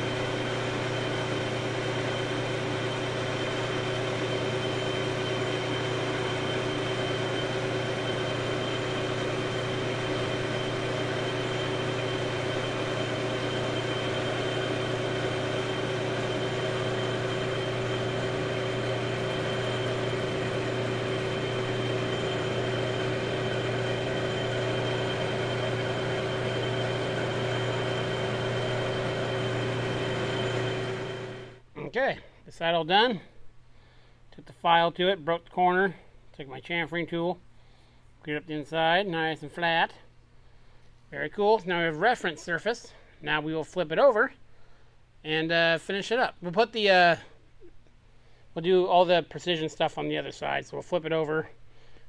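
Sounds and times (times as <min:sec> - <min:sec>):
metal lathe running: 0:00.0 - 0:31.6.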